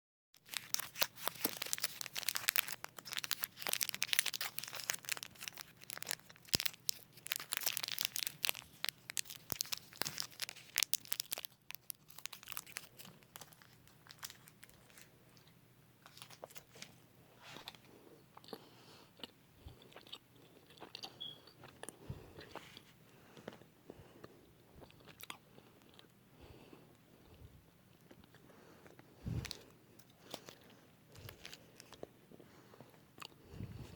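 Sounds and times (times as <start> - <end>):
plastic wrapper crinkling: 0.4 - 17.9, 29.3 - 32.1
chewing: 17.6 - 26.1, 27.2 - 33.4.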